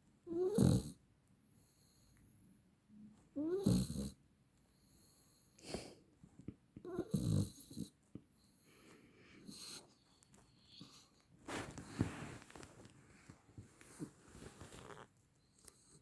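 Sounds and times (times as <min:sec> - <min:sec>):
dog snoring: 0:00.3 - 0:01.0, 0:03.4 - 0:04.2, 0:06.8 - 0:08.0.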